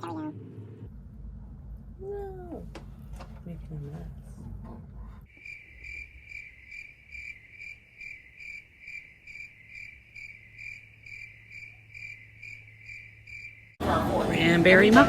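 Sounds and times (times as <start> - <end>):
low steady hum: 0.0 - 5.3.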